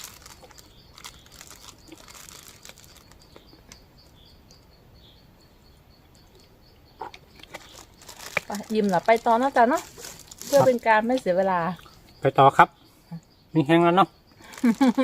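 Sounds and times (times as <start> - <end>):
small clicks and crinkles: 0.0 - 3.8, 7.3 - 11.3
small animal chirping: 0.0 - 15.0.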